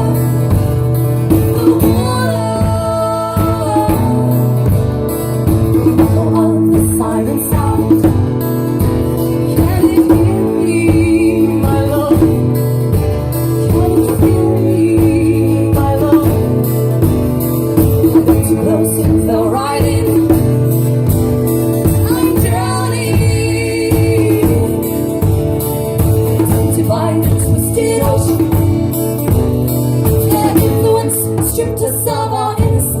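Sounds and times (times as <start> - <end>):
steady drum beat: 0.0 - 33.0
strummed guitar: 0.0 - 33.0
person singing: 1.4 - 4.8, 9.2 - 12.8, 13.6 - 17.0, 18.1 - 20.9, 21.9 - 25.3, 26.0 - 29.2, 30.1 - 33.0.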